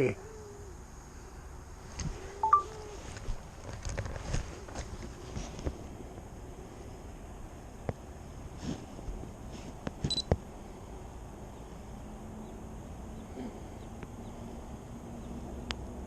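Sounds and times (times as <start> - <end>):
background noise: 0.0 - 16.0
short high electronic beep: 2.4 - 2.6.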